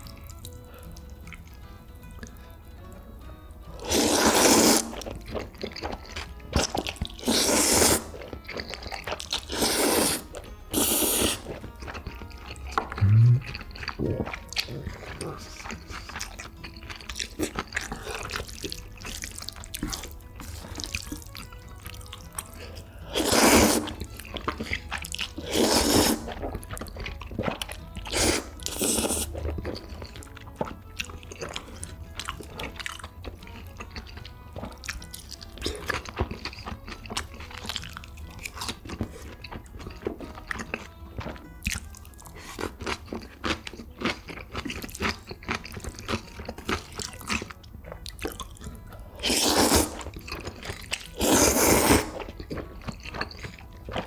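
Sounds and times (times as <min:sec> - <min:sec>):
wet chewing: 0:00.0 - 0:54.0
noodle slurps: 0:03.7 - 0:11.7, 0:22.4 - 0:30.3, 0:49.1 - 0:54.0.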